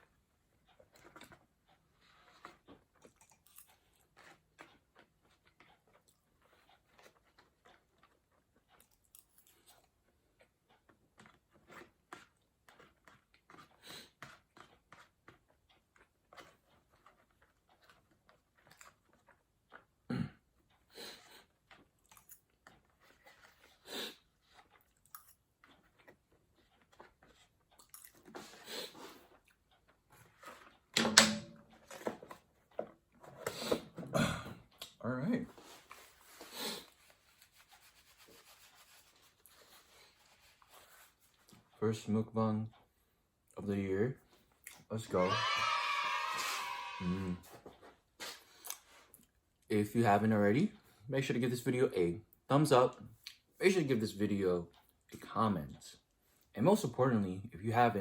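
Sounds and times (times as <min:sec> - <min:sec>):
soft chewing with mouth clicks: 0:00.0 - 0:30.9, 0:34.6 - 0:41.8, 0:42.7 - 0:44.9, 0:47.4 - 0:49.7, 0:52.3 - 0:53.6, 0:54.6 - 0:55.3.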